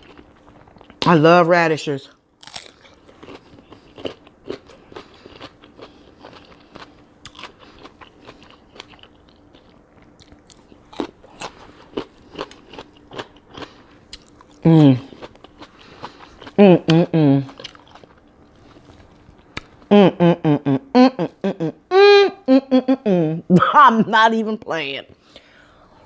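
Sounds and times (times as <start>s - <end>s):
person chewing crunchy radish: 0.0s - 1.1s, 2.4s - 19.9s.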